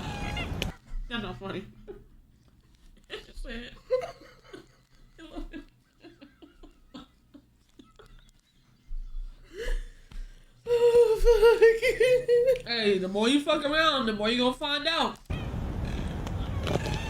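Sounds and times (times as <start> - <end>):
soft laughter: 0.7 - 10.1
breathing: 9.4 - 10.7.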